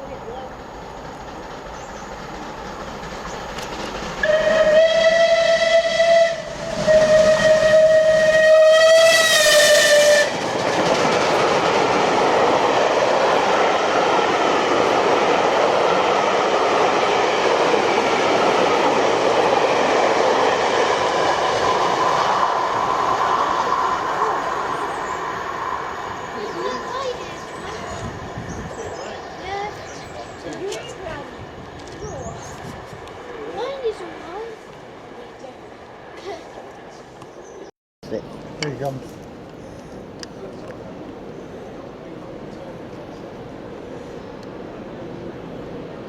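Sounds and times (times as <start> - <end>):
steam whistle blasts: 4.2 - 10.4.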